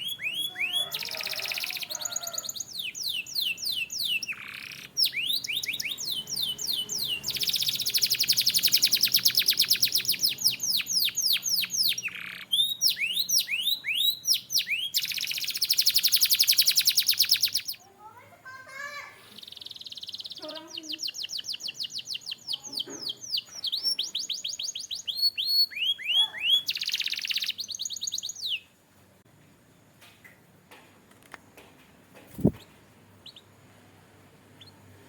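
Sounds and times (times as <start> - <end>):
canary singing trills: 0.0 - 17.9, 19.2 - 28.8, 32.3 - 33.6, 34.5 - 35.0.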